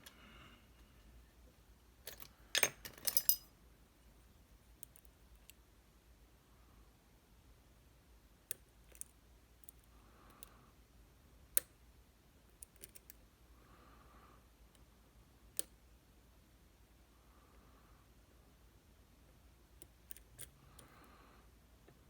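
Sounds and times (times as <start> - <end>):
metallic lock picking clicks: 2.0 - 3.5, 12.6 - 13.2, 19.8 - 20.9.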